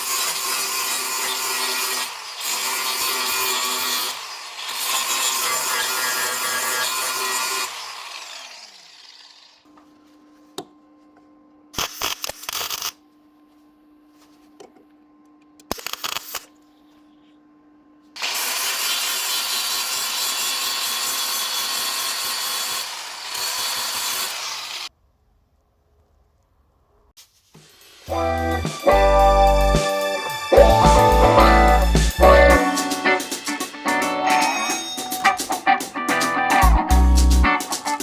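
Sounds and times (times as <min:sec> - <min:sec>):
handheld power tool running: 0:00.0 - 0:09.7, 0:18.2 - 0:24.9.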